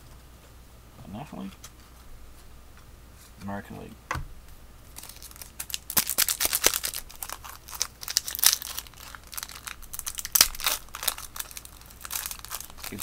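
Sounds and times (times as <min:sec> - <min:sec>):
plastic wrapper crackling: 0:04.9 - 0:13.0.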